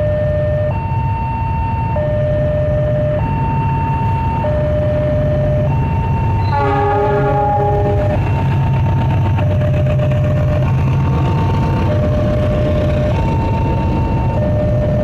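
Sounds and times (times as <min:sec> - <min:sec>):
level crossing alarm two-tone signal: 0:00.0 - 0:08.7, 0:09.3 - 0:10.4, 0:11.8 - 0:15.0
rail vehicle rumble: 0:00.0 - 0:15.0
train horn blast: 0:06.4 - 0:08.4.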